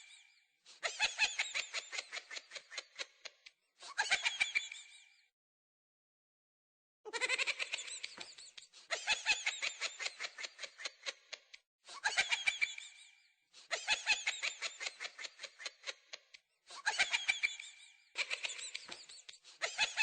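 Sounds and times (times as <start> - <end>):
toy laughing through speaker: 7.1 - 13.0, 13.7 - 20.0.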